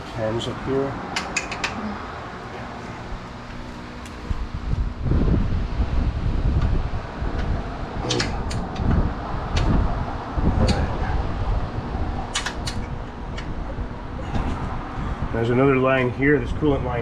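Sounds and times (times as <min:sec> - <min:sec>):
tools clicking and clinking: 0:01.1 - 0:01.8.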